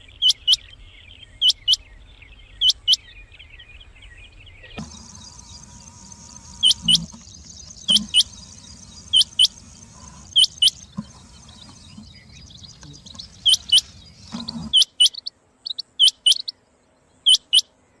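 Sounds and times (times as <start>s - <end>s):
quail calling high notes: 4.8s - 15.3s.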